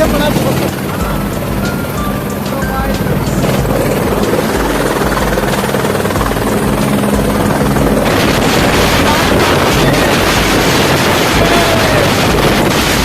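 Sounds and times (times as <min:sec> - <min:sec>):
helicopter rotor and engine: 0:00.0 - 0:13.0
rushing hiss: 0:00.0 - 0:13.0.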